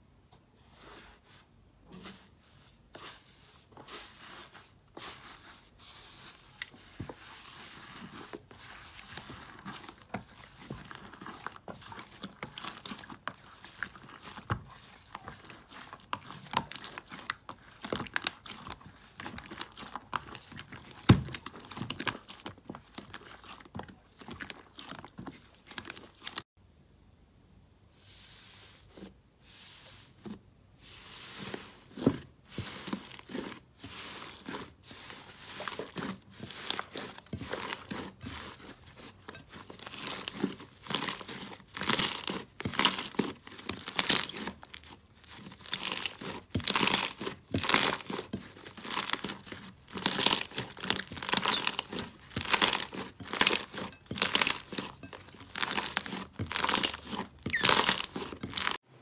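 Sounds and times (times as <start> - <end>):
slime crackling and popping: 39.7 - 58.8.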